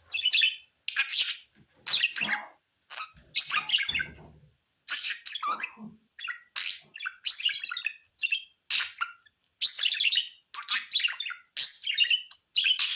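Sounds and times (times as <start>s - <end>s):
budgerigar chirping and warbling: 0.0s - 4.3s, 4.9s - 12.9s.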